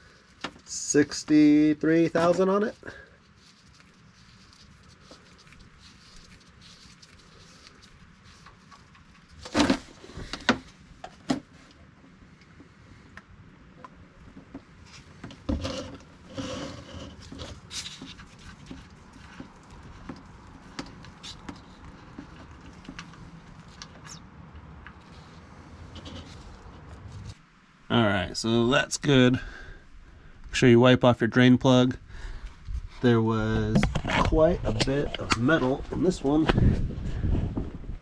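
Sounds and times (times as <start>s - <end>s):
rustle: 0.0s - 13.1s, 13.9s - 28.6s
faint steady background noise: 0.0s - 38.0s.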